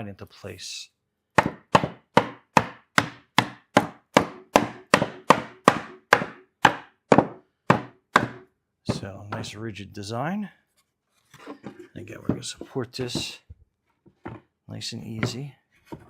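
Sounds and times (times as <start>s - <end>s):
rubber mallet tapping wood: 1.4s - 9.5s, 12.2s - 13.4s, 15.1s - 16.0s.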